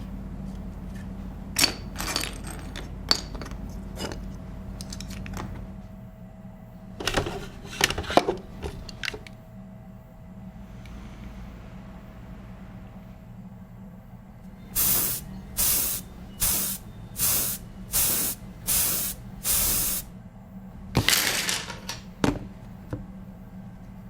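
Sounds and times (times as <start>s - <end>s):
short hissing sprays: 14.8s - 20.1s.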